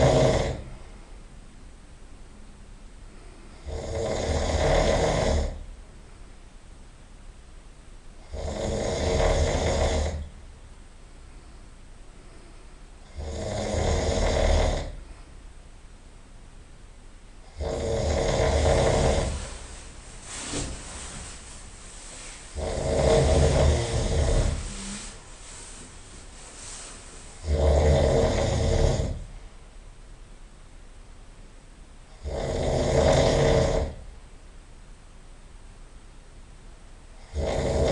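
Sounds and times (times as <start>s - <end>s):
person snoring loudly: 0.0s - 0.7s, 3.5s - 5.7s, 8.2s - 10.3s, 13.0s - 15.0s, 17.4s - 19.7s, 22.5s - 25.2s, 27.4s - 29.3s, 32.1s - 34.0s, 37.2s - 37.9s.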